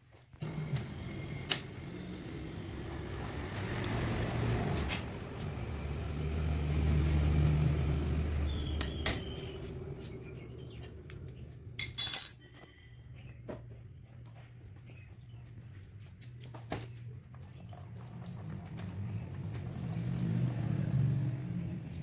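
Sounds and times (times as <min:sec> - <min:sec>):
motorcycle engine idling: 0:01.8 - 0:12.3.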